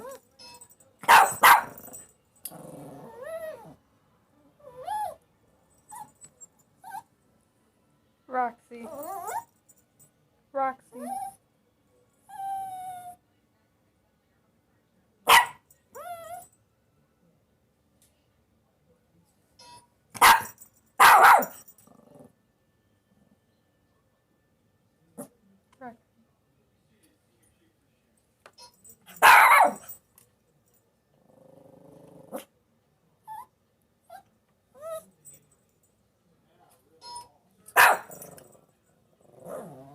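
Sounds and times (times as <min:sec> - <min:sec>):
dog barking: 0:01.0 - 0:02.0, 0:15.3 - 0:15.6, 0:20.2 - 0:21.6, 0:29.1 - 0:30.0, 0:37.8 - 0:38.3
dog growling: 0:02.4 - 0:03.8, 0:21.8 - 0:22.4, 0:31.2 - 0:32.5, 0:39.2 - 0:39.9
dog whining: 0:02.5 - 0:03.8, 0:04.6 - 0:05.2, 0:08.8 - 0:09.5, 0:11.0 - 0:11.4, 0:12.3 - 0:13.2, 0:34.1 - 0:35.1.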